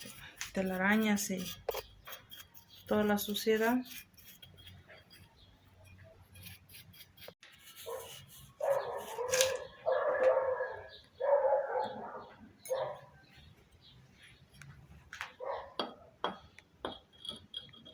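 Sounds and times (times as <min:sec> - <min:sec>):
dog barking: 0:07.8 - 0:13.1, 0:15.4 - 0:15.8.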